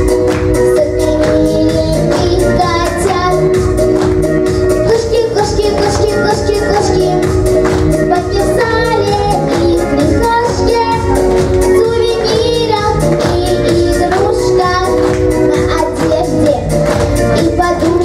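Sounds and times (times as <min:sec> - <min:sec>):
backing track with steady beat: 0:00.0 - 0:18.0
child singing: 0:00.6 - 0:03.8, 0:04.7 - 0:18.0.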